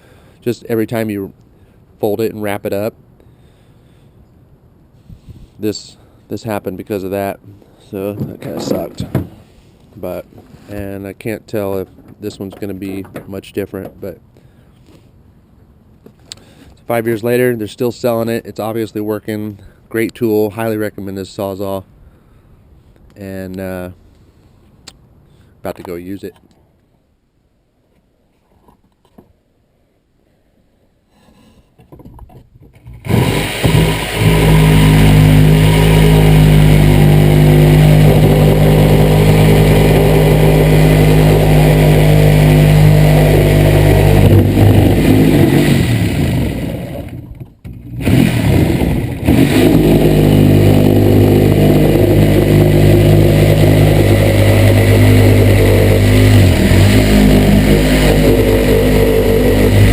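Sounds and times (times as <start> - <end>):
reciprocating saw running: 32.9 - 59.9.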